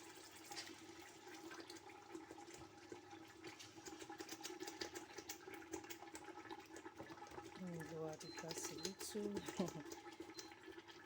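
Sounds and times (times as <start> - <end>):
tomatoes frying in oil: 0.0 - 11.0.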